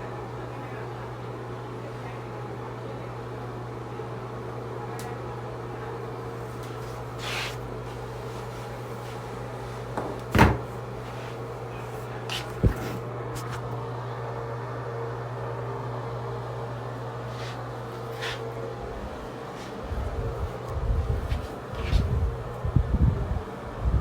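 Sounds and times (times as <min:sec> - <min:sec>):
steady low hum: 0:00.0 - 0:24.0
soft rustle: 0:06.4 - 0:10.0, 0:10.8 - 0:13.7, 0:17.3 - 0:18.5, 0:19.1 - 0:22.5
handling knocks: 0:09.9 - 0:11.4, 0:12.2 - 0:13.6.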